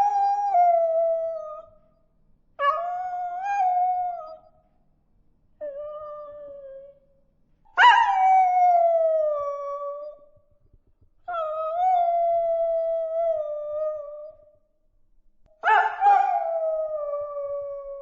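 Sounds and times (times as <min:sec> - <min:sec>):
puppy howling: 0:02.6 - 0:04.4, 0:05.6 - 0:07.0, 0:07.8 - 0:10.2, 0:15.6 - 0:18.0.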